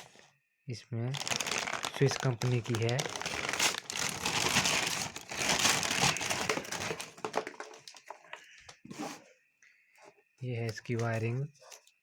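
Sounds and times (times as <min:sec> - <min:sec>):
wrapping crinkling and rustling: 0:01.1 - 0:08.4.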